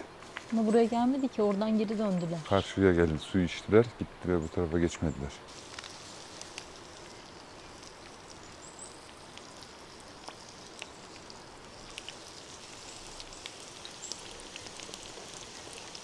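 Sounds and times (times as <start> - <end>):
rain hiss: 0.0 - 16.0
raindrops tapping: 5.6 - 16.0.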